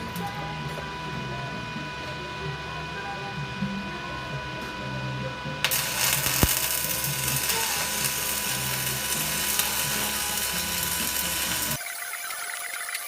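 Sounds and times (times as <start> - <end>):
welding arc crackling hiss: 5.6 - 13.0.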